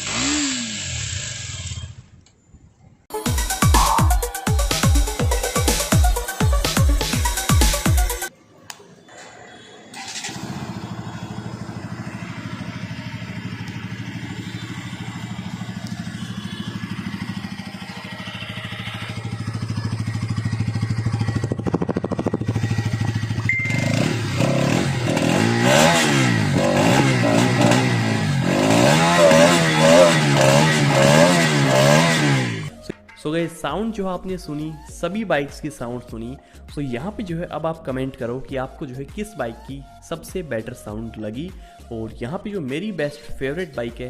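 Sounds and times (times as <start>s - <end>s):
motorcycle engine revving: 0.0s - 2.2s, 10.0s - 32.8s
motorcycle idling: 10.0s - 32.8s.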